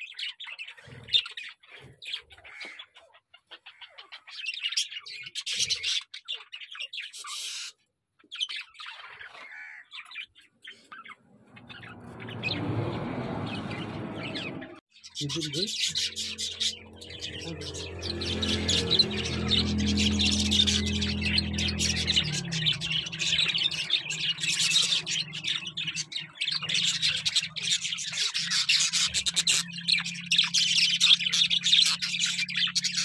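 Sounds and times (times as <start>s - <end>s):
budgerigars chirping: 0.0s - 33.0s
dull rushing noise: 11.3s - 14.8s, 16.0s - 25.9s.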